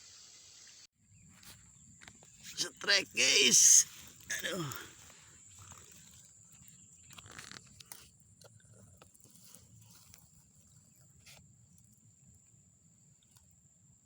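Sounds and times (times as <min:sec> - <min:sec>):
faint rustles and clicks: 0:03.9 - 0:11.9.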